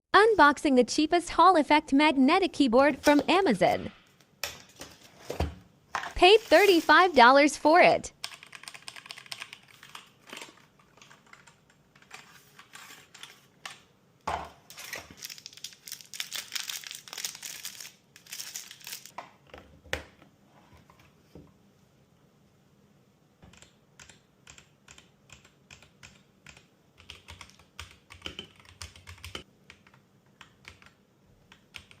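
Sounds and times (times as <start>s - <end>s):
packaging crinkling and rustling: 14.7s - 19.1s.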